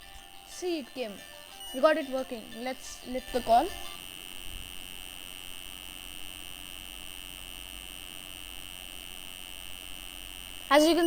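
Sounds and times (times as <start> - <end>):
high-pitched electronic tone: 0.0 - 4.1
faint low hum: 0.0 - 11.0.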